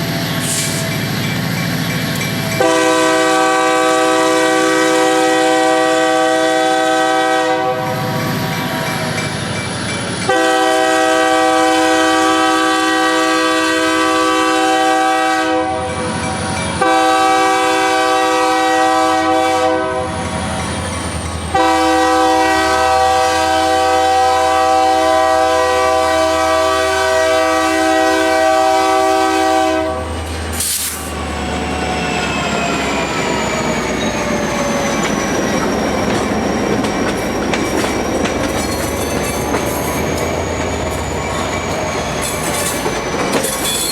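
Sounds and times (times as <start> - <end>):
train wheels squealing: 0.0 - 3.1, 7.9 - 10.4, 15.8 - 16.9, 20.1 - 21.5, 30.0 - 43.9
train rumbling by: 0.0 - 43.9
locomotive air horn blasts: 2.6 - 8.2, 10.3 - 16.0, 16.8 - 20.2, 21.5 - 31.0.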